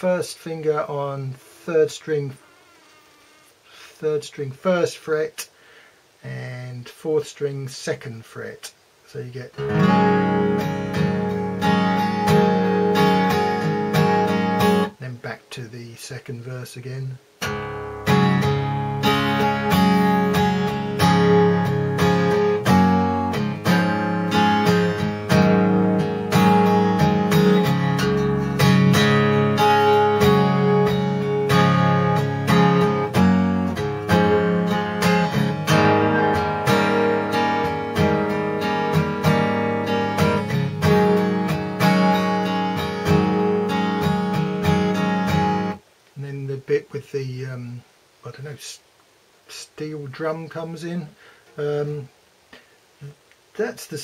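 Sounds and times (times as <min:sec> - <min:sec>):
acoustic guitar strumming: 0:00.0 - 0:05.3, 0:09.3 - 0:15.4, 0:17.4 - 0:45.8.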